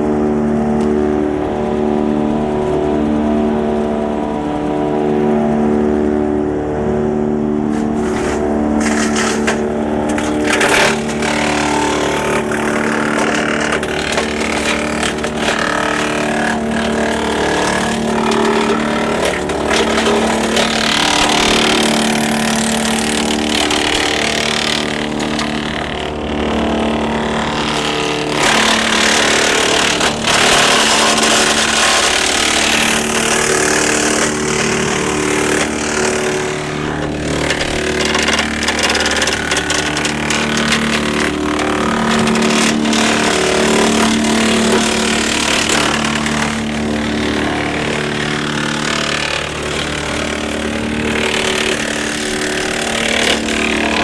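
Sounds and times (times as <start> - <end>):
tractor engine running: 7.7 - 54.0
wood chipper crackling branches: 7.7 - 54.0.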